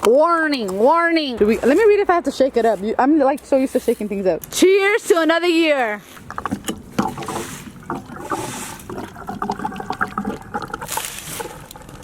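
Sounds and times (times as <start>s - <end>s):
liquid glugging from a bottle: 6.2s - 12.0s.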